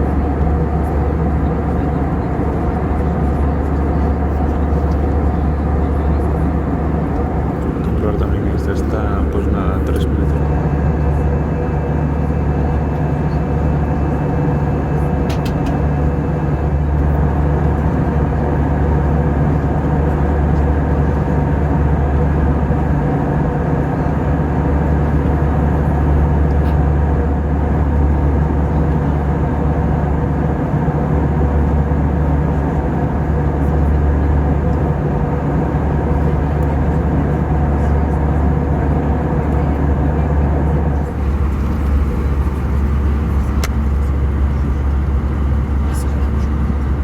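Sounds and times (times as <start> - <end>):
aircraft cabin drone: 0.0 - 47.0.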